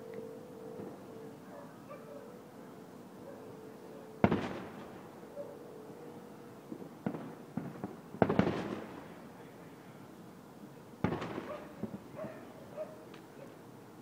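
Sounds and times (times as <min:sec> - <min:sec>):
small firework pops: 0:04.2 - 0:04.9, 0:06.7 - 0:08.9, 0:11.0 - 0:12.0
fireworks booming: 0:04.2 - 0:05.1, 0:06.7 - 0:09.2, 0:11.0 - 0:12.2.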